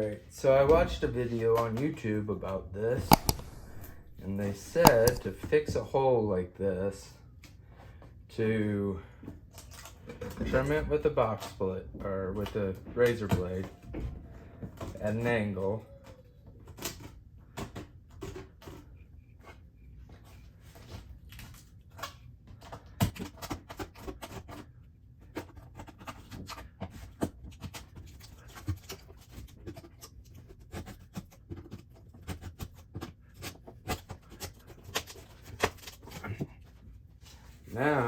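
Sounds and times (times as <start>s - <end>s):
utility knife cutting and scraping: 3.0s - 5.6s.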